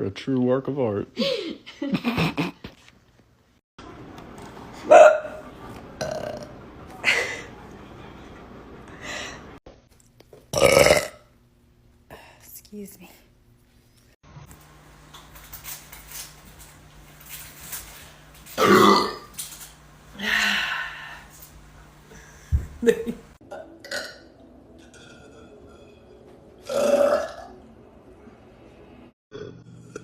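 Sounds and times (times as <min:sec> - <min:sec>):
women burping loudly: 0:10.6 - 0:11.2, 0:18.6 - 0:19.2, 0:23.5 - 0:24.2, 0:26.6 - 0:27.5.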